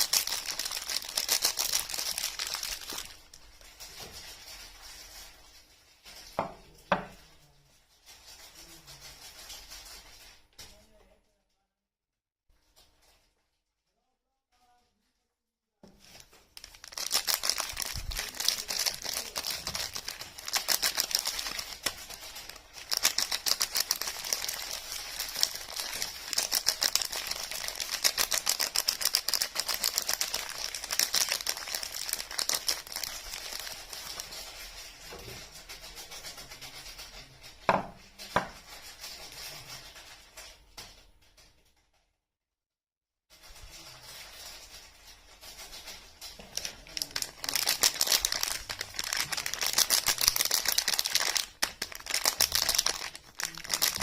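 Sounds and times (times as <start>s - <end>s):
wrapper crinkling and rustling: 0.0s - 10.8s, 15.9s - 41.4s, 43.3s - 54.0s
sharp wrapper snaps: 16.6s - 22.2s, 46.6s - 54.0s.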